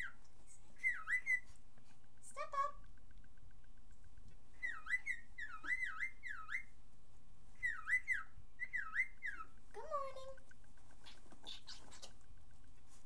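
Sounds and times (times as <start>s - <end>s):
cockatiel whistling: 0.8s - 1.6s, 4.6s - 6.8s, 7.6s - 9.6s, 11.0s - 12.1s.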